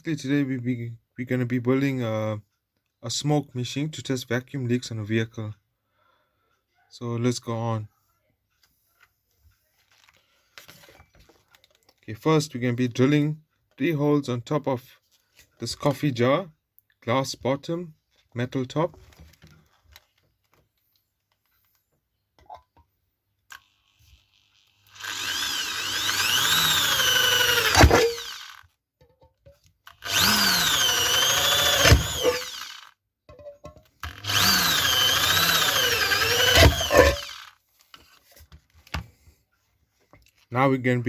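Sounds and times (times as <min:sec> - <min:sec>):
power drill whining: 0:23.5 - 0:28.6, 0:29.9 - 0:32.9, 0:34.0 - 0:38.2.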